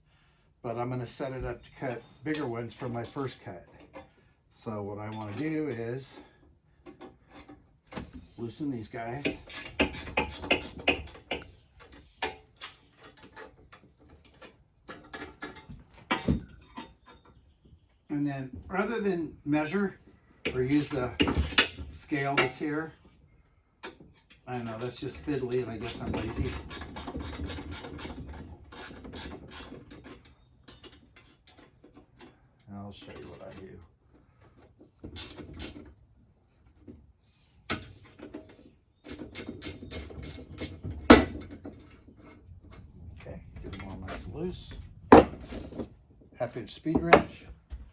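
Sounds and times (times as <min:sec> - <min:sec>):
wrench clicking on metal bolts: 0:09.2 - 0:12.8, 0:35.2 - 0:35.8.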